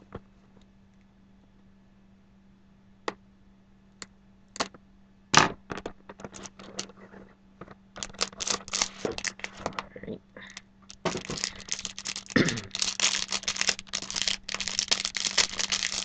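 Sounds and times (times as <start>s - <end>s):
faint steady hum: 0.0s - 16.0s
crinkling and rustling packaging: 6.1s - 9.9s, 10.5s - 16.0s
light packaging clicks: 8.0s - 9.8s, 10.5s - 16.0s.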